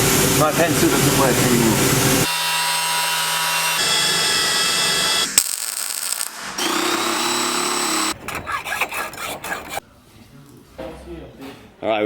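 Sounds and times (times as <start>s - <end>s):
power tool running: 0.0s - 8.2s.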